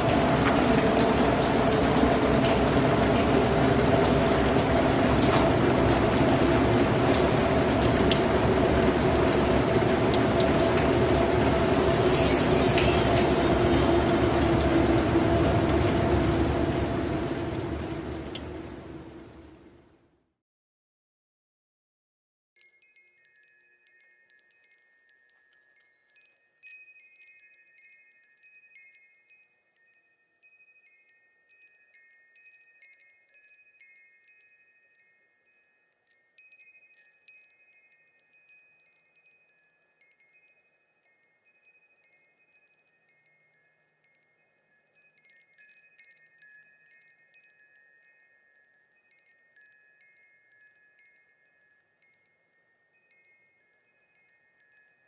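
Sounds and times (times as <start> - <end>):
wind chimes ringing: 7.3 - 17.2, 22.6 - 55.0.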